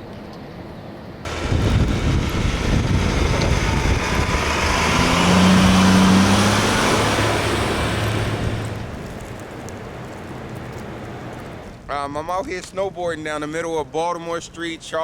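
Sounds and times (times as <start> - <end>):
vehicle driving past: 1.3 - 9.4.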